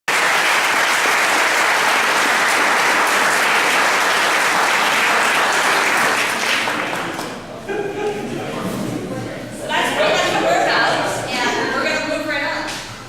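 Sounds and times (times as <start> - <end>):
audience applause: 0.1 - 7.5.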